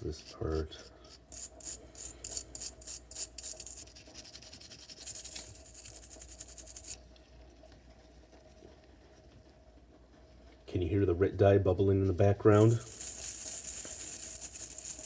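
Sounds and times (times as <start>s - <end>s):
brush scrubbing metal blade: 0.0s - 7.0s, 12.4s - 15.0s.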